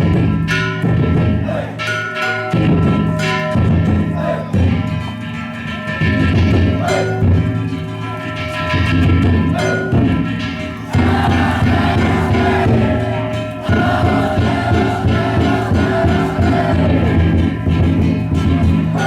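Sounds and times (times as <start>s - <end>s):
taiko drum beating: 0.0s - 1.8s, 2.5s - 5.2s, 6.0s - 7.8s, 8.7s - 19.0s
hand gongs ringing: 0.0s - 19.0s
crowd chanting: 1.4s - 2.0s, 4.1s - 4.8s, 6.8s - 7.3s, 10.7s - 19.0s.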